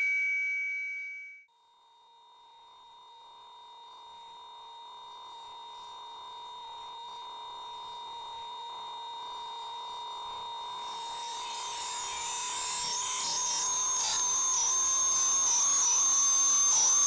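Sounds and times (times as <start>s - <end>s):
high whistle-like tone: 0.0s - 1.2s.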